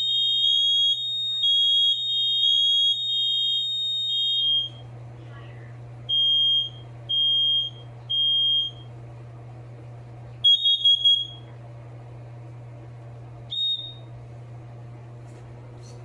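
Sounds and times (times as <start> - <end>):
smoke alarm beeping: 0.0 - 4.9, 6.1 - 8.9, 10.4 - 11.5, 13.5 - 14.2.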